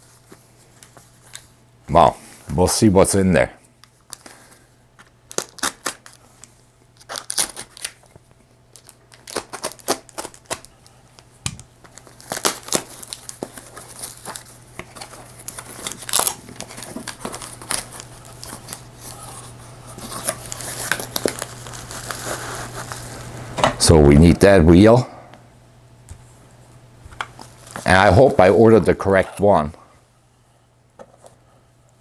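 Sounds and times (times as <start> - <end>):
packaging crinkling and tearing: 3.8 - 23.2.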